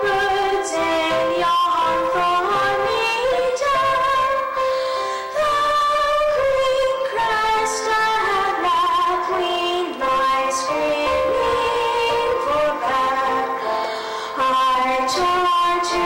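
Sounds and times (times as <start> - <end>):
woman singing high notes: 5.4 - 16.0.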